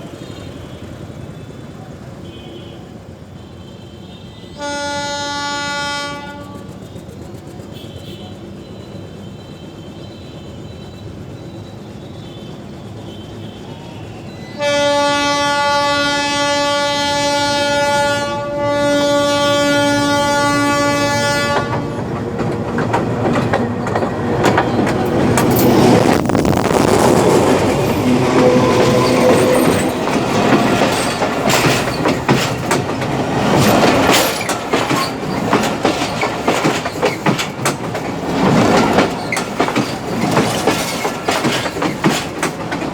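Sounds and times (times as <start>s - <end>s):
locomotive horn blasts: 3.9s - 6.8s, 13.0s - 22.1s, 27.7s - 30.1s
train wheels rushing and clicking: 6.1s - 42.9s.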